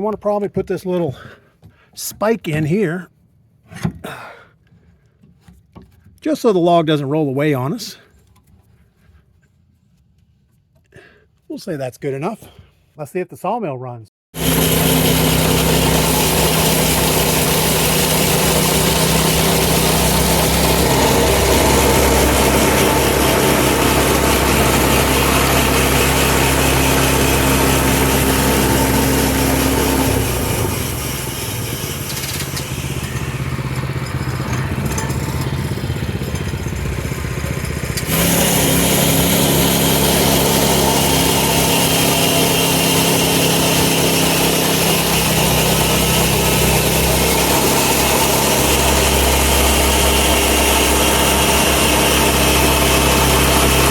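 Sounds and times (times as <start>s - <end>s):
sawmill engine running: 14.4s - 53.9s.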